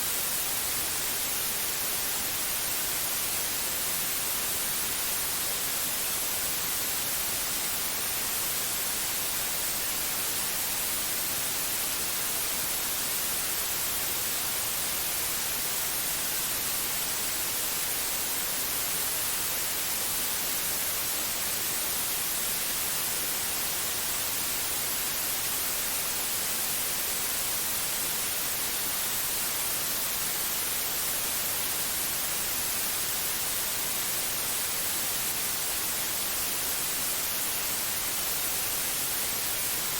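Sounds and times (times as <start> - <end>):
white noise hiss: 0.0 - 39.9.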